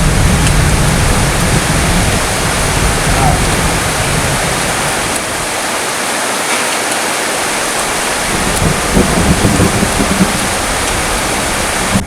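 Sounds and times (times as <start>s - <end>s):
thunder rumbling: 0.0s - 5.5s, 7.7s - 12.0s
heavy rain pouring: 0.0s - 12.0s.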